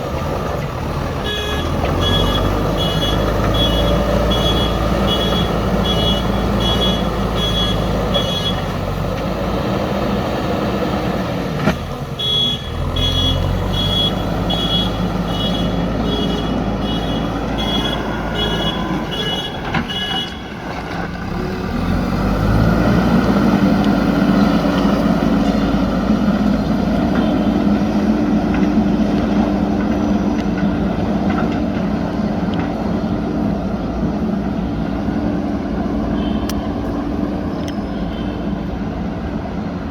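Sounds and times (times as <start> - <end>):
diesel engine under load: 0.0 - 39.9
reversing alarm beeping: 1.3 - 8.6, 12.2 - 20.4.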